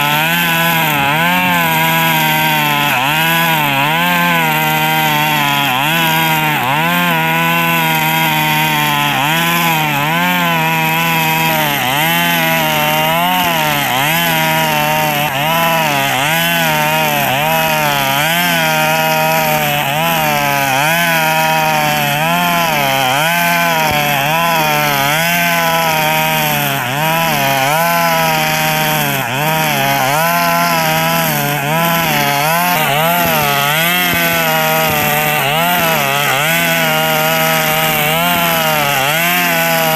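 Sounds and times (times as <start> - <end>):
brush cutter engine at high revs: 0.0 - 39.9.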